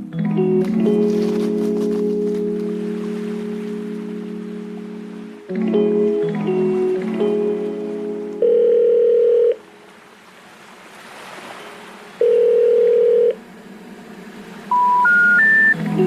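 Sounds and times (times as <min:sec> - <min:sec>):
rising three-tone telephone signal: 0:08.4 - 0:09.6, 0:12.2 - 0:13.4, 0:14.7 - 0:15.8
telephone ringback beep: 0:08.4 - 0:09.6, 0:12.2 - 0:13.4, 0:14.7 - 0:15.8.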